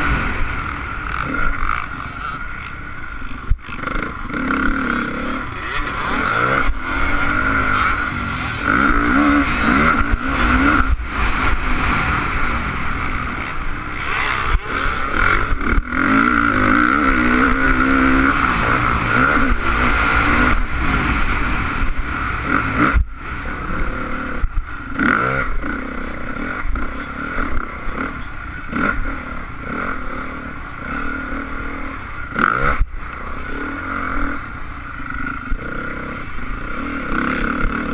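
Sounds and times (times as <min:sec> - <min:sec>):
wind rush: 0:00.0 - 0:24.8
motorcycle engine revving: 0:00.0 - 0:37.9.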